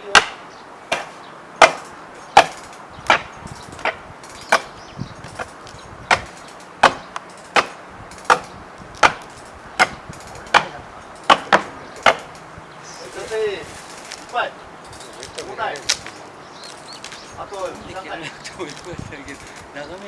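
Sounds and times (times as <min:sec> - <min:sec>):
axe chopping wood: 0:00.1 - 0:01.8, 0:06.1 - 0:08.4.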